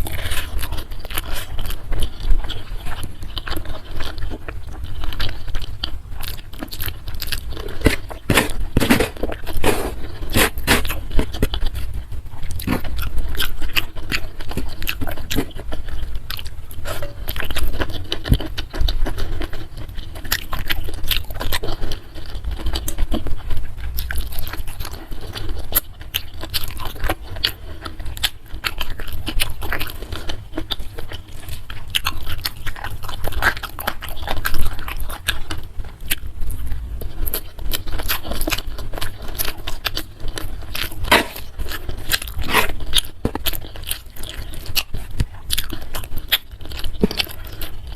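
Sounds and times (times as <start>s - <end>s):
chewing and crunching food: 0.0s - 47.9s.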